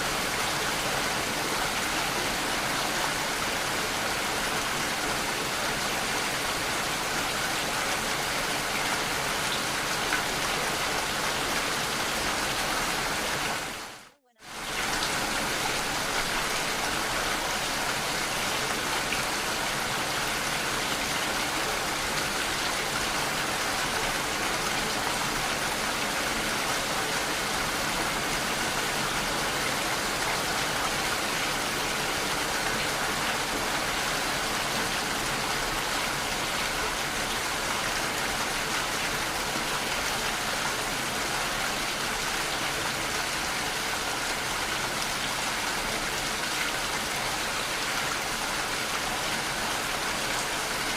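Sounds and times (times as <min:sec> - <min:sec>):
steady rain: 0:00.0 - 0:50.9.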